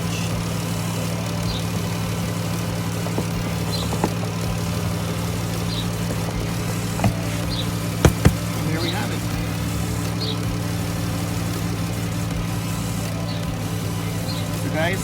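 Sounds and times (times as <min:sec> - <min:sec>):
car engine idling: 0:00.0 - 0:15.0.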